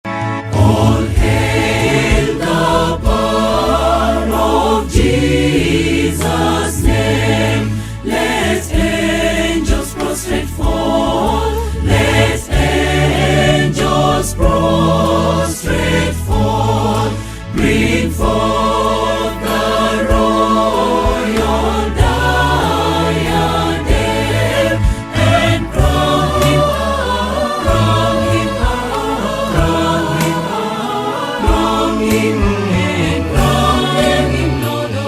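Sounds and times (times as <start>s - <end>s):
gospel choir singing: 0.1s - 35.0s.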